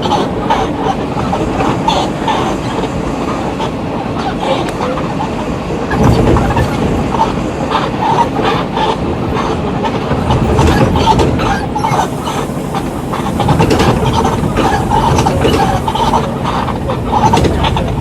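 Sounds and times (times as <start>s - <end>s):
bus engine: 0.0s - 18.0s
body rattles and knocks: 5.9s - 7.2s, 10.0s - 11.7s.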